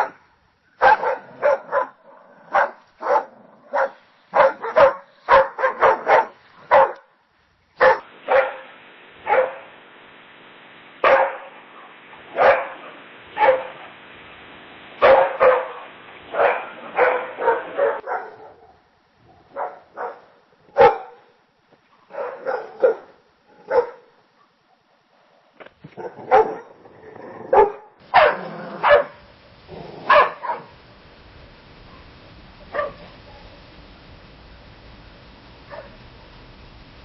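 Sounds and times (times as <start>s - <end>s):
steady hiss: 0.0s - 27.3s, 27.9s - 37.0s
dogs barking: 0.8s - 7.1s, 7.8s - 9.7s, 11.0s - 14.0s, 15.0s - 18.8s, 19.5s - 21.3s, 22.1s - 24.6s, 25.9s - 26.8s, 27.5s - 29.2s, 30.0s - 30.8s, 32.7s - 33.5s.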